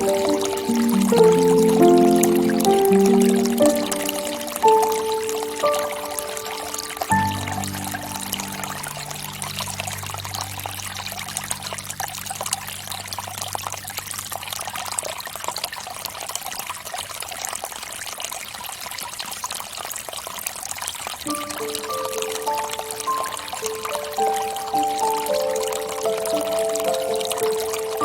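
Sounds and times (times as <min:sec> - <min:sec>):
music chord: 0:00.0 - 0:13.0, 0:21.3 - 0:28.0
fountain water trickling into basin: 0:00.0 - 0:28.0.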